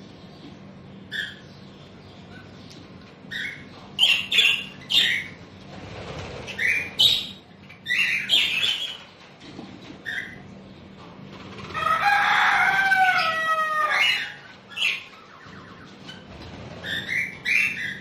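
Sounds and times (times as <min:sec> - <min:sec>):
budgerigars squawking: 0:01.1 - 0:01.6, 0:11.8 - 0:18.0.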